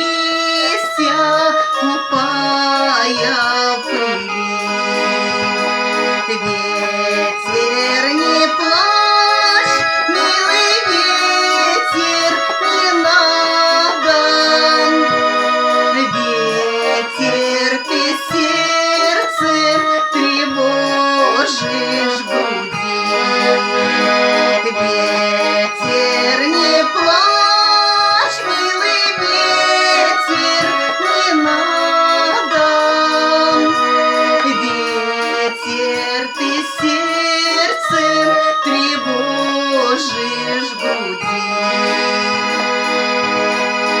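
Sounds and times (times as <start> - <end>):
button accordion playing: 0.0 - 44.0.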